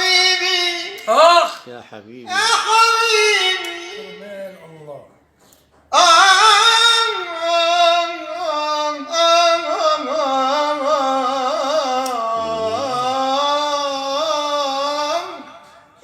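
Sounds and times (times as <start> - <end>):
person singing melismatic phrase: 12.4 - 13.3.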